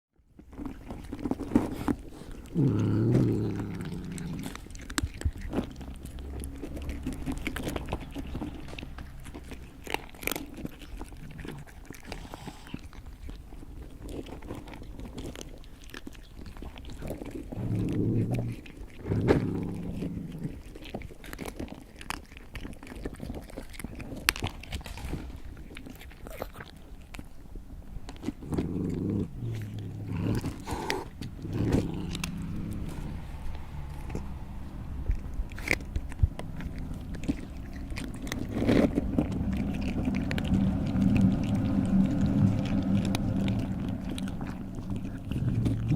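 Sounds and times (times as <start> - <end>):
cat chewing food: 0.2 - 45.9
low drawn-out rumble: 26.8 - 45.9.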